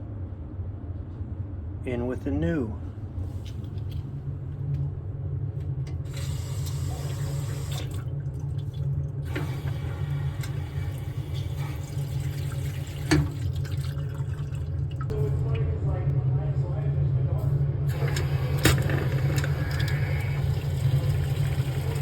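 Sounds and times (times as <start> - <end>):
steady low hum: 0.0 - 22.0
water running and hissing: 6.0 - 8.1, 8.7 - 14.6, 17.9 - 22.0.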